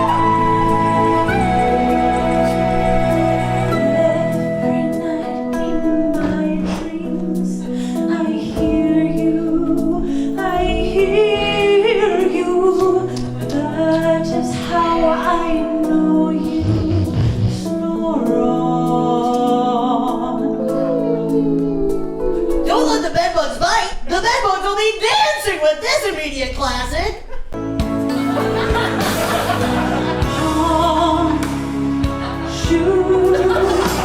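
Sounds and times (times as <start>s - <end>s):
slow ballad instrumental backing: 0.0s - 22.6s, 27.6s - 34.0s
woman's wordless vocal: 1.7s - 27.4s.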